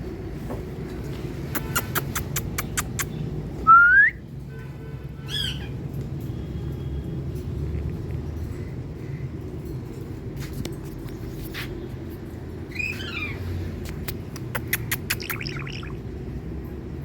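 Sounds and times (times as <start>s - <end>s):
parrot clicks: 13.8s - 15.9s
parrot squawking call: 14.7s - 16.0s
parrot rising whistle: 15.2s - 16.0s.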